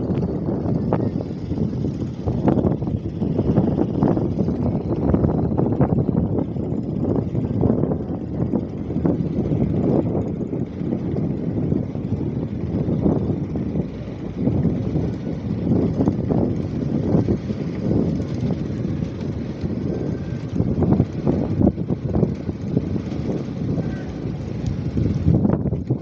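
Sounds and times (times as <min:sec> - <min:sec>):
wind buffeting microphone: 0:00.0 - 0:26.0.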